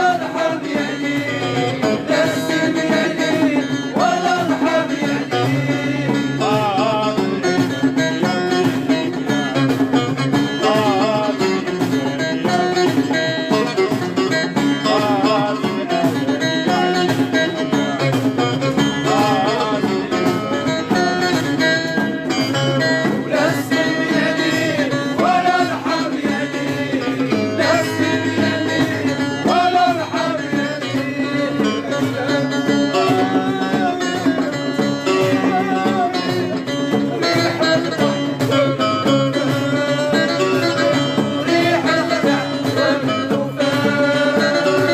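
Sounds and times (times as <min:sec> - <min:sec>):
live folk music: 0:00.0 - 0:44.9.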